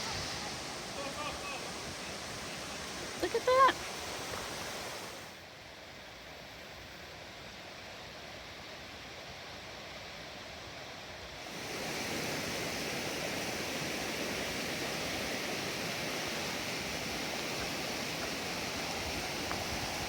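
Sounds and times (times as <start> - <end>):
waterfall rushing: 0.0 - 5.4, 11.4 - 20.0.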